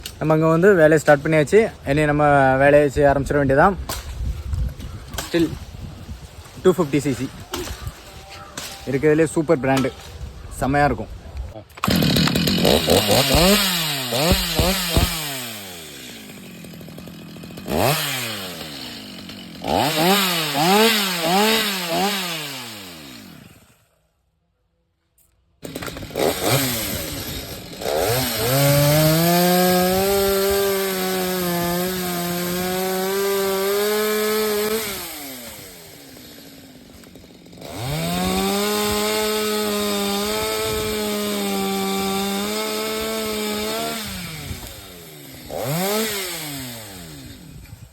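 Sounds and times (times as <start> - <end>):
chainsaw revving and cutting wood: 11.7 - 23.9, 25.6 - 47.9.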